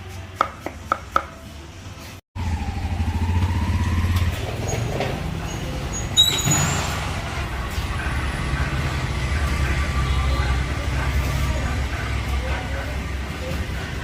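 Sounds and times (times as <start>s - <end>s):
vehicle engine running: 7.0s - 14.0s.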